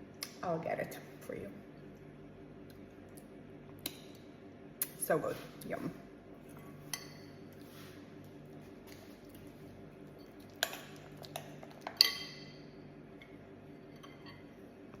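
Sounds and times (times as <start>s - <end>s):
spoon clinking against dish: 12.0s - 12.6s.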